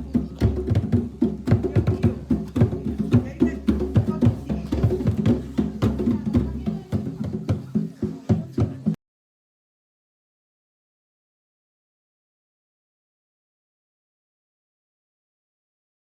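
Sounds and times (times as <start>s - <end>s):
music with percussive beat: 0.0s - 9.0s.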